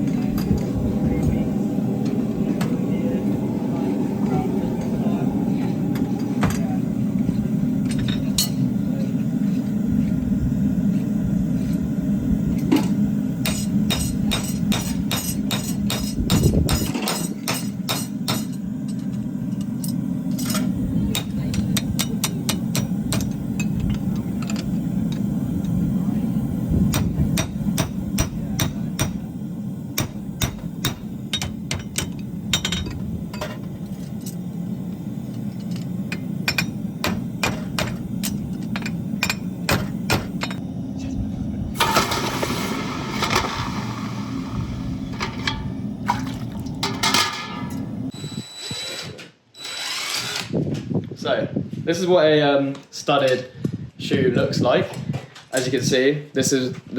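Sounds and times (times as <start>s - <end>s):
steady low hum: 0.0s - 48.3s
hammer striking horseshoe on anvil: 13.4s - 18.6s, 21.2s - 23.7s, 26.9s - 29.2s, 30.0s - 33.0s.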